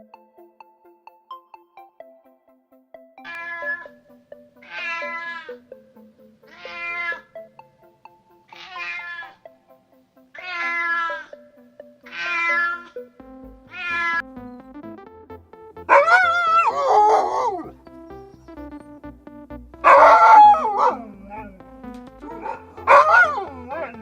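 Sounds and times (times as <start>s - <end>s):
background music: 0.0s - 24.0s
animal meow-like calls: 3.3s - 3.9s, 4.6s - 5.6s, 6.5s - 7.3s, 8.5s - 9.4s, 10.4s - 11.4s, 12.1s - 13.0s, 13.7s - 14.2s, 22.2s - 24.0s.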